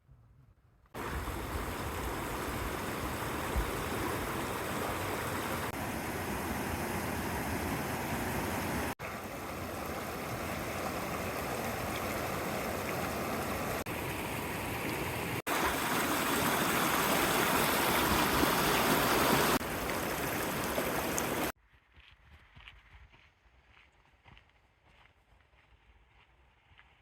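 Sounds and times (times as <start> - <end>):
stream water rushing and splashing: 1.0 - 21.6.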